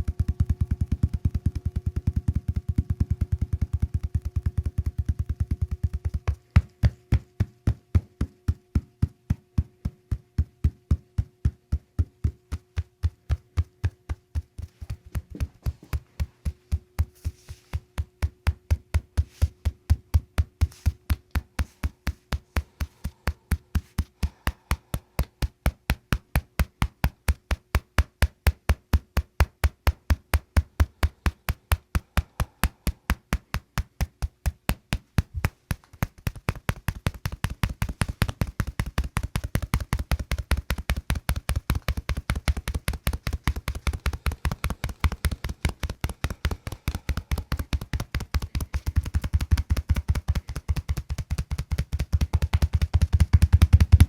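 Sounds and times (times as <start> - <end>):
rapid tapping clicks: 21.0 - 54.0.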